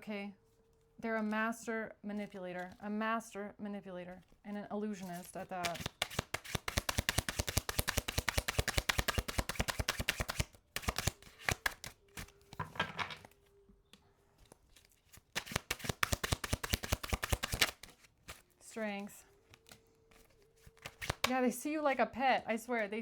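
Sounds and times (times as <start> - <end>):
cards being shuffled by hand: 4.0 - 13.5, 14.4 - 21.6.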